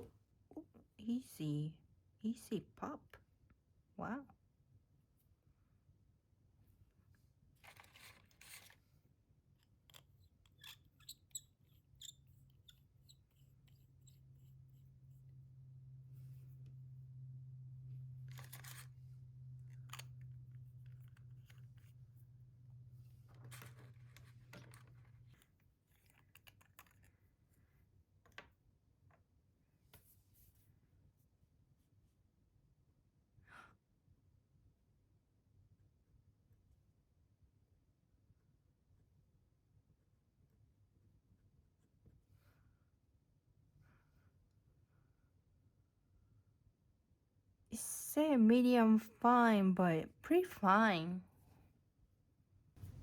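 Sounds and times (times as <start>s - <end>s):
pen rustle: 7.5s - 8.8s, 18.3s - 19.0s.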